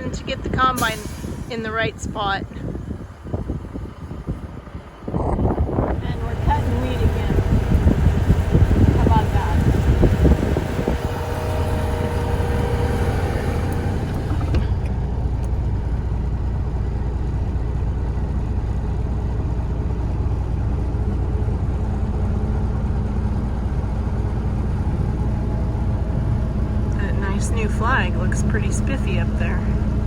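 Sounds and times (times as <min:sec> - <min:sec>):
combine harvester engine rumble: 0:00.0 - 0:30.0
steady hum: 0:05.1 - 0:14.9, 0:23.3 - 0:30.0.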